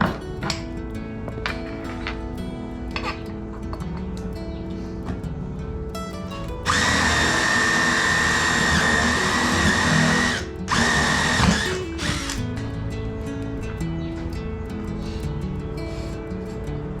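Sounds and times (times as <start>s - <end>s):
background music: 0.0s - 17.0s
power drill running: 6.7s - 12.4s.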